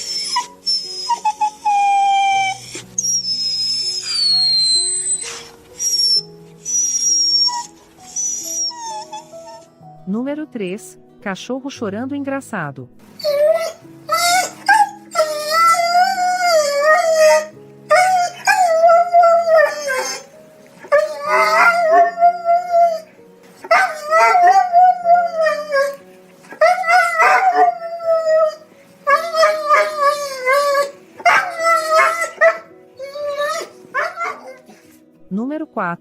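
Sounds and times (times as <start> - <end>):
dog howling: 0.0 - 6.2, 13.2 - 34.8.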